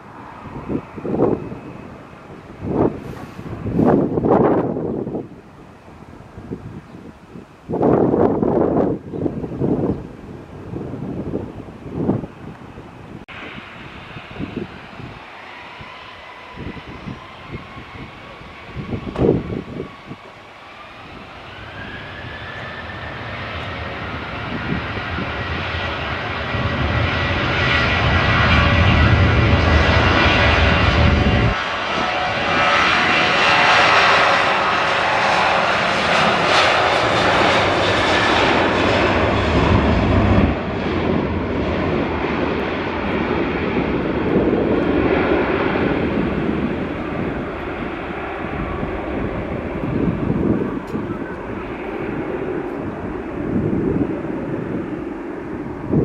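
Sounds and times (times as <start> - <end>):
airliner engines whining: 0.0 - 56.0
deep rumble: 8.1 - 56.0.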